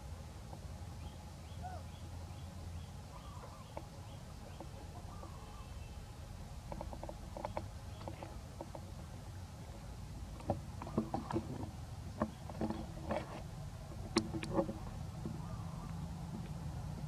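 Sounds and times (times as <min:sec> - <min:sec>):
light clicks and knocks: 0:06.7 - 0:08.9, 0:10.3 - 0:17.0.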